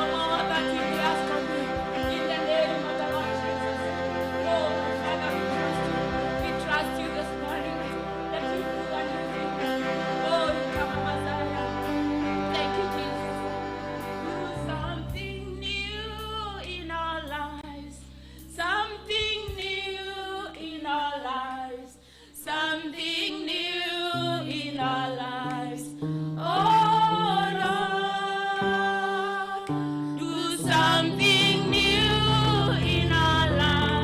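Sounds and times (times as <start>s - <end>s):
voices singing along: 0.0s - 15.2s, 30.2s - 34.0s
sustained keyboard chords: 0.0s - 20.4s, 24.2s - 34.0s
woman singing: 0.0s - 34.0s.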